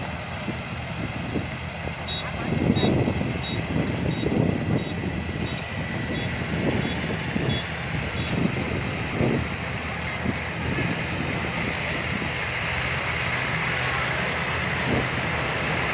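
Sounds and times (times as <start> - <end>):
combine harvester engine running: 0.0 - 15.9
short high beeps: 2.1 - 5.7.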